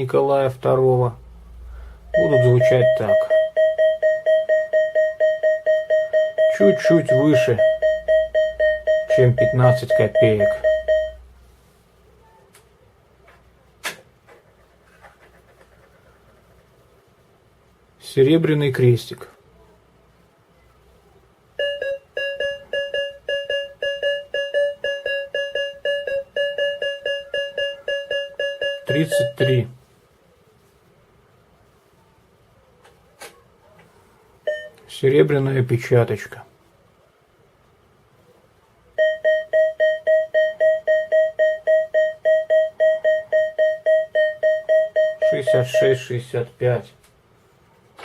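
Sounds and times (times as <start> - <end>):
metal detector beeping: 2.1 - 11.2, 21.6 - 29.6, 39.0 - 46.1.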